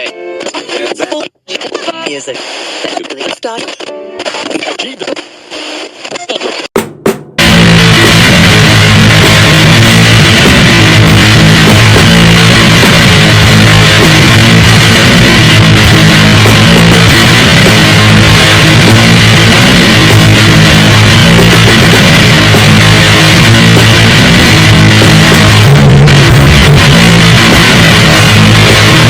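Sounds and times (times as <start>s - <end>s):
distorted guitar noise music: 7.4s - 29.0s.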